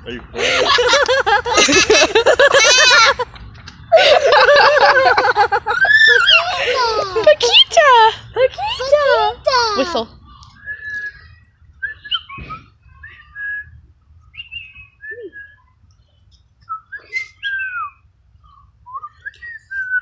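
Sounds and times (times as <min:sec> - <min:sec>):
parrot whistles and chirps: 0:11.8 - 0:13.8, 0:16.7 - 0:18.0.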